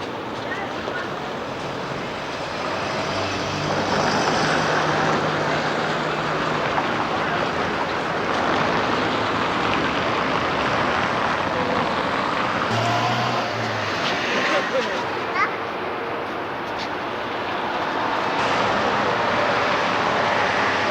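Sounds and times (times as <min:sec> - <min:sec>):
vehicles passing: 0:00.0 - 0:20.9
low engine drone: 0:12.7 - 0:15.3.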